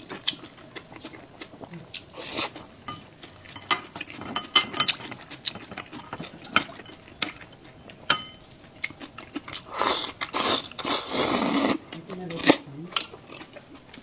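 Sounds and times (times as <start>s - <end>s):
utensils clinking against dishes: 2.9s - 7.4s, 8.1s - 8.5s.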